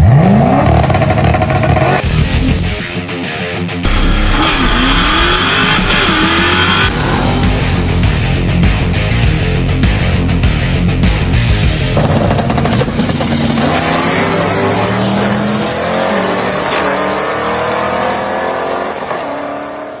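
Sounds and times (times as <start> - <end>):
car engine accelerating hard: 0.0 - 2.1, 3.9 - 9.6, 11.9 - 20.0
heavy rock music: 1.7 - 17.5.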